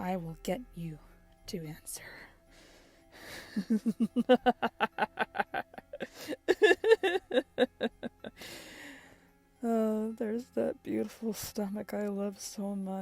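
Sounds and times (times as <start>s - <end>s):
woman laughing: 3.3s - 8.4s.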